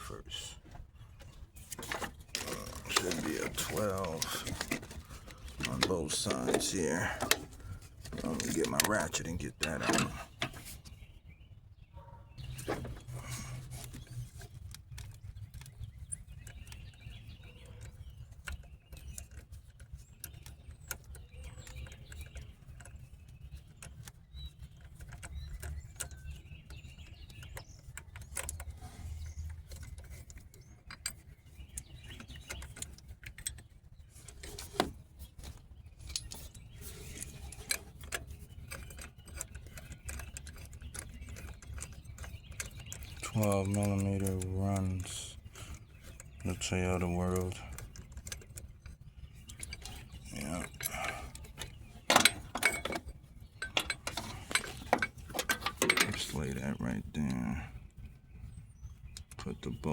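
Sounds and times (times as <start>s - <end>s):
steel tools clinking: 49.5s - 56.5s.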